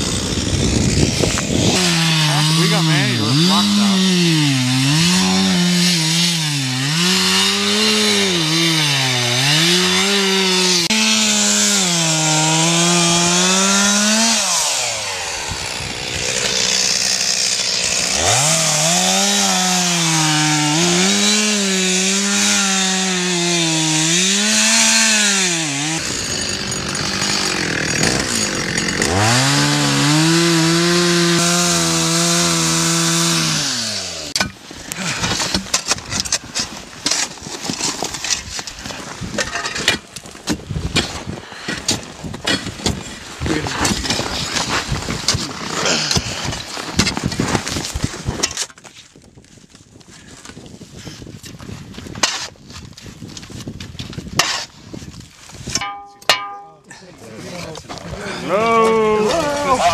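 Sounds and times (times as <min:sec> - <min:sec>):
chainsaw engine revving: 0:00.0 - 0:34.4.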